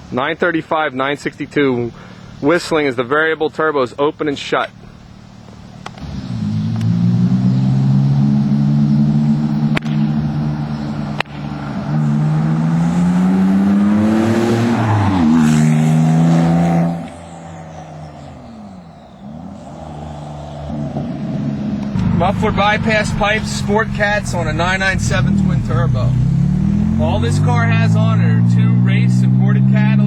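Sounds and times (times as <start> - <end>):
sports car engine revving: 5.2 - 18.5, 19.2 - 30.0.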